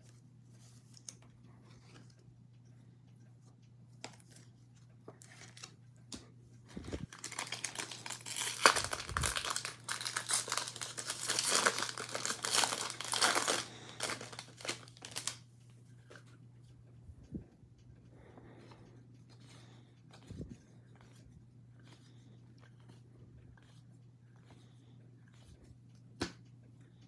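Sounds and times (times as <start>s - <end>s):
foil wrapper crinkling: 6.7s - 15.4s.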